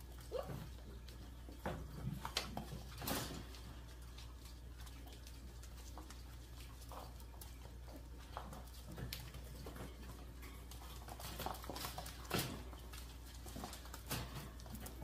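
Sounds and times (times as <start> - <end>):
faint dog noises: 0.0 - 0.9
paws and claws pattering: 0.0 - 15.0.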